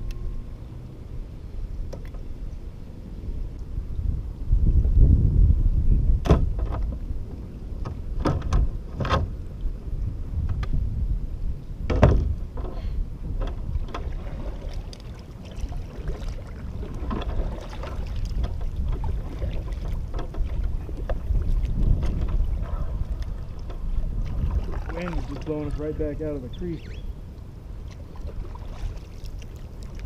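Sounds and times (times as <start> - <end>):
wind buffeting microphone: 0.0 - 30.0
kayak paddle knocks and splashes: 11.8 - 12.8, 13.4 - 25.9, 27.9 - 30.0.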